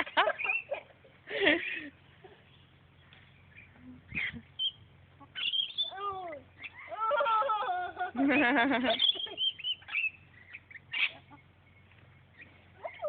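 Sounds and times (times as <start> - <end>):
birds calling: 0.0 - 13.0
short high bird chirps: 3.4 - 6.0, 9.0 - 12.6.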